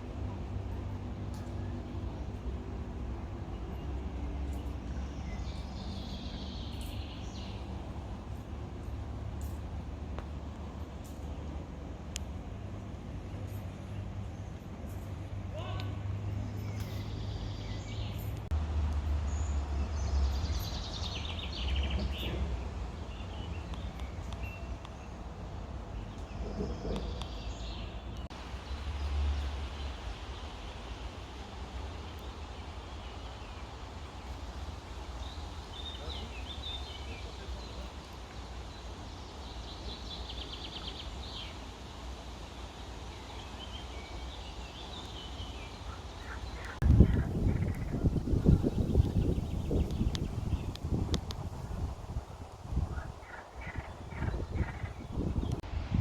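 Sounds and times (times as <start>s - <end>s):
birds chirping and trilling: 3.4s - 8.0s, 42.7s - 52.1s, 52.7s - 55.6s
wind buffeting microphone: 46.6s - 56.0s.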